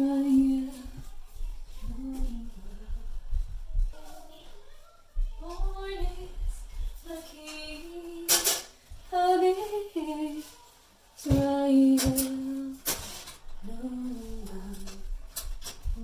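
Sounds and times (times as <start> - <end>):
person singing and humming: 0.0 - 1.0, 11.2 - 12.9, 13.6 - 15.2.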